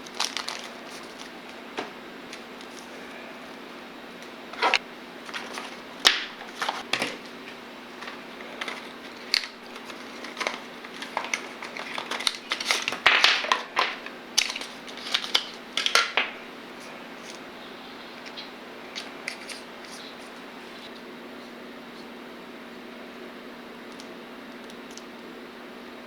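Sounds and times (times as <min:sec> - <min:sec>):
packaging crinkling: 0:00.0 - 0:03.2, 0:04.2 - 0:17.5, 0:18.1 - 0:21.0
faint steady hum: 0:00.0 - 0:26.0.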